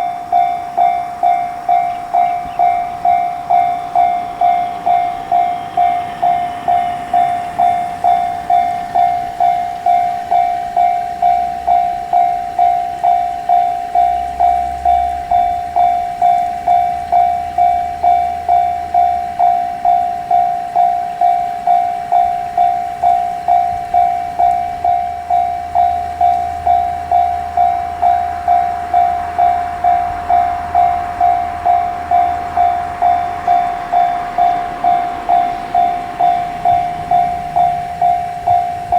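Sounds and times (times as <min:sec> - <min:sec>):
railroad crossing bell ringing: 0:00.0 - 0:38.9
train rumbling past: 0:00.0 - 0:38.9.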